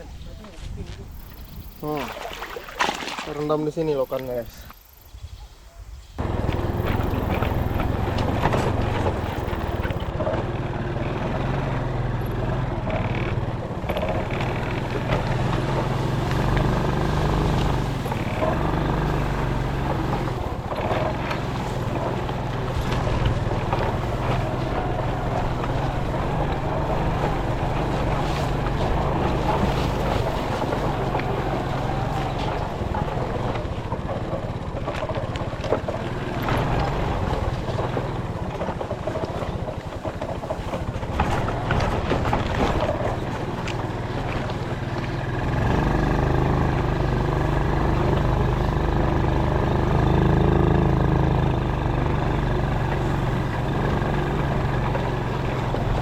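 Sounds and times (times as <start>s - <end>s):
wind noise: 0.0s - 2.0s
water noise: 0.0s - 56.0s
small boat engine droning: 6.2s - 56.0s.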